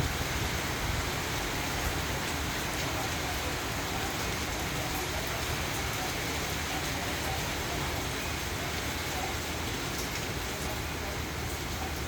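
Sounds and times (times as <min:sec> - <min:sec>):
rain falling: 0:00.0 - 0:12.0.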